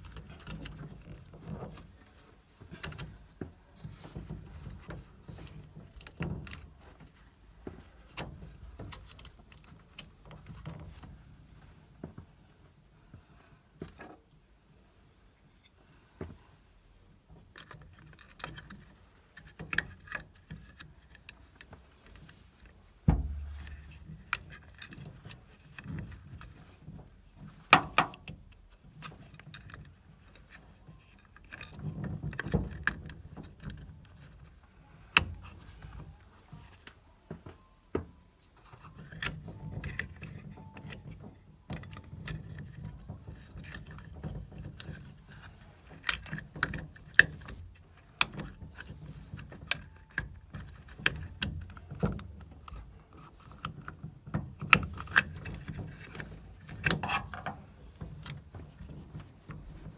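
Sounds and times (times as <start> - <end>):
heavy thump: 23.1 - 23.9.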